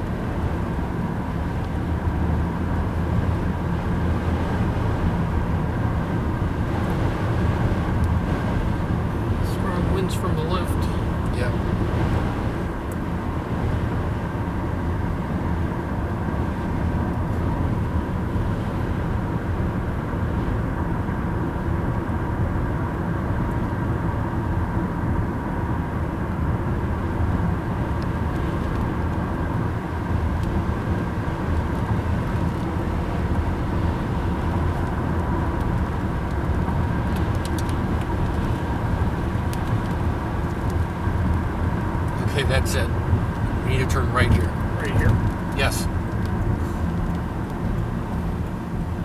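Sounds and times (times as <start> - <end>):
road and wind rumble in car: 0.0 - 49.0.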